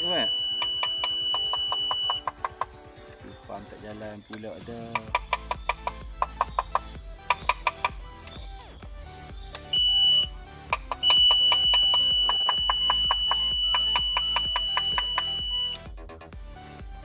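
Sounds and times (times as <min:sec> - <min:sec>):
high warning beep: 0:00.0 - 0:02.6, 0:09.5 - 0:15.9
music with steady beat: 0:00.0 - 0:17.0.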